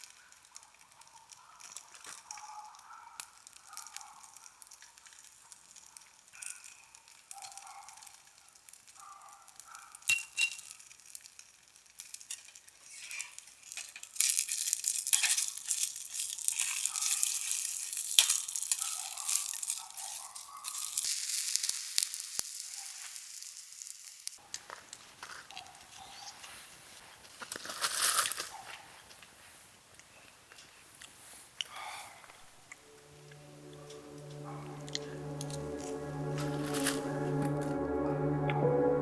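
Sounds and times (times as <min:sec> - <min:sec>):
food sizzling in a pan: 0:20.7 - 0:24.4.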